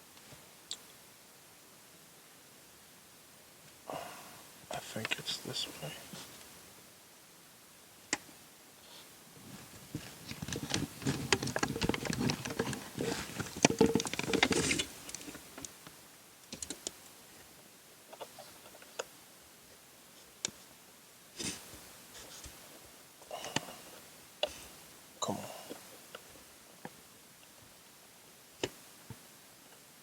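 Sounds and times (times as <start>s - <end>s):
plastic rubbing and scraping: 9.6s - 15.6s.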